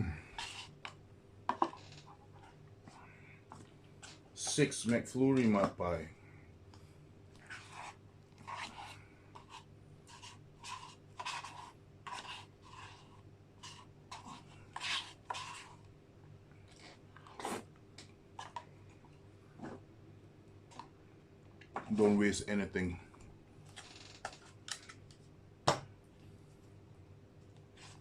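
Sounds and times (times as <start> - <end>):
spoon scraping ice cream: 0.3 - 2.6, 7.4 - 15.9.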